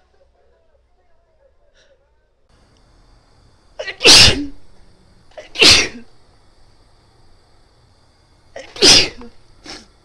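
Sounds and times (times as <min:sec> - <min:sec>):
woman sneezing: 0:03.8 - 0:04.6, 0:05.3 - 0:06.1, 0:08.6 - 0:10.0.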